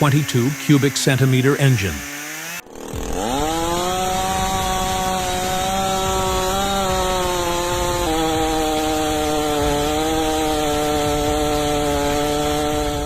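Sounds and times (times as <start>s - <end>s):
chainsaw at full throttle: 0.0s - 13.0s.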